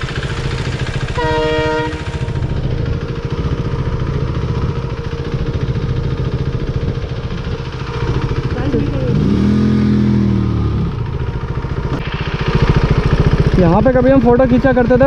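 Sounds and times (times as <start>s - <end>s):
motorcycle engine running at low speed: 0.0s - 15.0s
vehicle horn: 1.0s - 2.6s.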